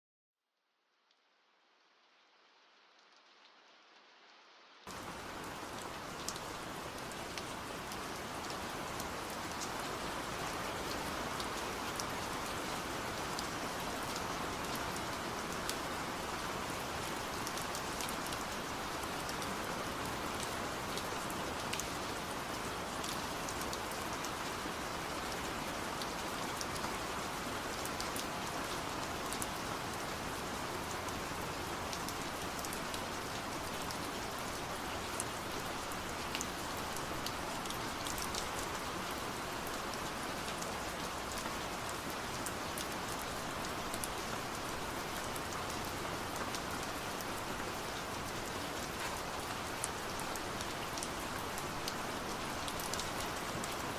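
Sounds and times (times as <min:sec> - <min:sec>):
steady rain hiss: 0:00.8 - 0:53.9
raindrops ticking nearby: 0:04.9 - 0:53.9.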